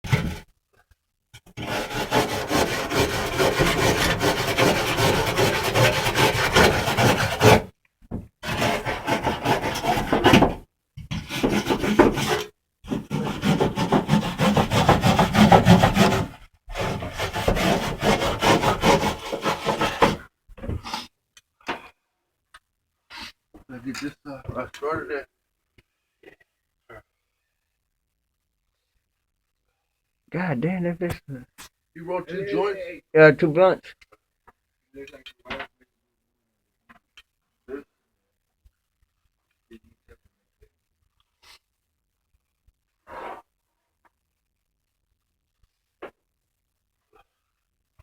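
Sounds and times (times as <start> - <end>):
rasping rubbing noise: 1.6 - 7.7, 8.4 - 20.2, 43.0 - 43.6.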